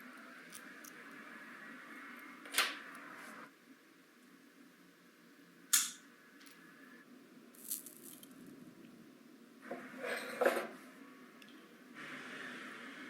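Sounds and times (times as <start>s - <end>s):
rustling and handling noise: 7.5s - 8.6s.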